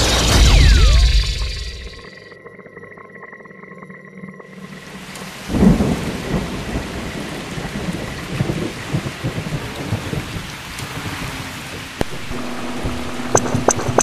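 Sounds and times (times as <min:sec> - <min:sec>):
rain hissing: 0:04.9 - 0:14.0
low thunder rumbling: 0:05.5 - 0:14.0
thunderclap: 0:05.5 - 0:14.0.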